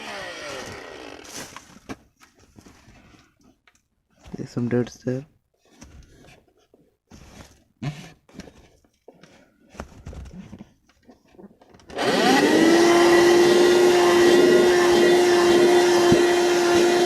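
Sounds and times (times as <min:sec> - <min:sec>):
car vacuum cleaner motor whine: 0:00.0 - 0:01.2, 0:11.9 - 0:17.0
handling knocks and rustles: 0:00.6 - 0:05.0.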